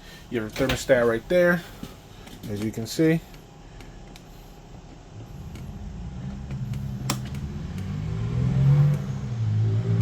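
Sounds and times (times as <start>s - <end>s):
air conditioner motor hum: 0.0s - 10.0s.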